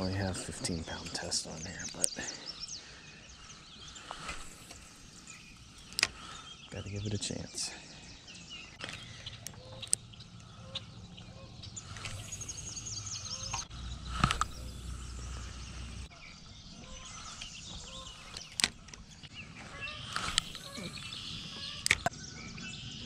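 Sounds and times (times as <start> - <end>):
bird trill: 0.0 - 23.0
birds chirping: 0.0 - 23.0
sharp clicks: 5.8 - 6.3, 8.7 - 10.5, 13.4 - 15.6, 20.1 - 21.1, 21.7 - 22.1
low rumble: 10.0 - 16.1.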